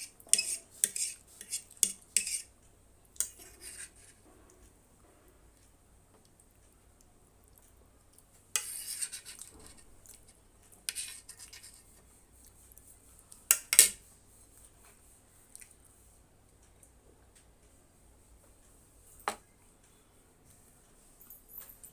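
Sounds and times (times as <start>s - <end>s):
utensil scraping and clinking on dish: 0.0s - 2.5s, 3.2s - 4.2s, 8.6s - 9.8s, 10.9s - 11.8s.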